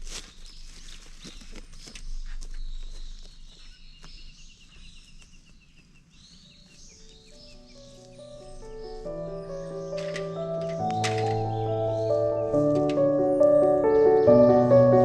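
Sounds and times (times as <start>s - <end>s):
birds chirping: 0.0s - 15.0s
bird trilling ticking notes: 6.7s - 15.0s
music notes: 7.8s - 15.0s
sharp clicks and rustles: 9.9s - 11.5s.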